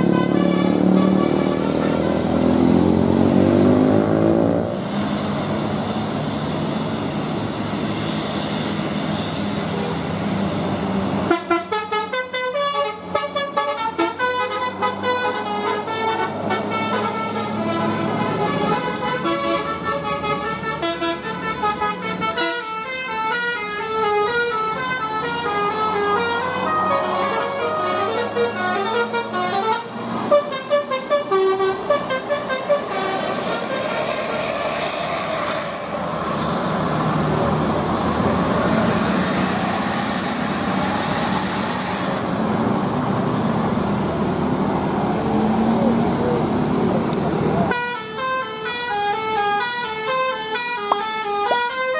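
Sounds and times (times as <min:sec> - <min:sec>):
bus horn playing a melody: 0:00.0 - 0:02.8, 0:11.2 - 0:34.4, 0:47.7 - 0:51.9
vehicle noise: 0:00.0 - 0:51.9.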